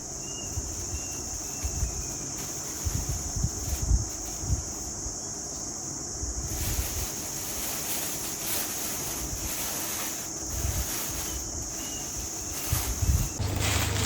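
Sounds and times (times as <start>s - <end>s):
wind buffeting microphone: 0.5s - 4.8s, 12.2s - 14.0s.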